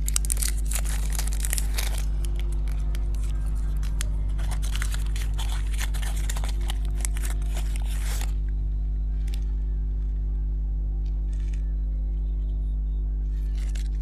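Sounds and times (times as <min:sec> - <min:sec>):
plastic packaging crinkling: 0:00.0 - 0:08.5, 0:13.3 - 0:14.0
steady low hum: 0:00.0 - 0:14.0.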